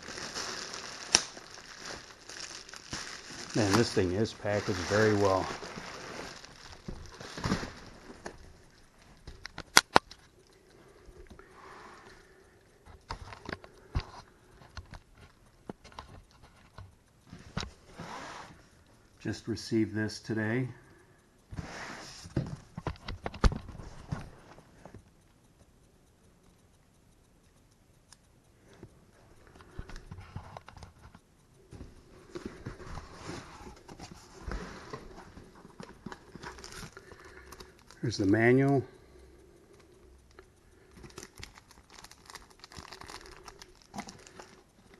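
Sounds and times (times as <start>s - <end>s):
bubble wrap crinkling: 0.0s - 10.2s, 32.3s - 38.8s, 41.0s - 44.9s.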